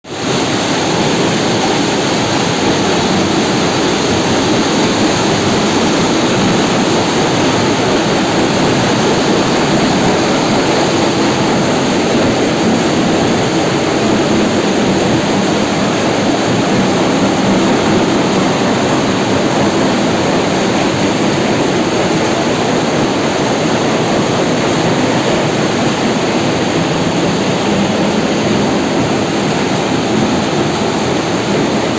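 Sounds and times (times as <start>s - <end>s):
heavy machinery running: 0.0s - 31.9s.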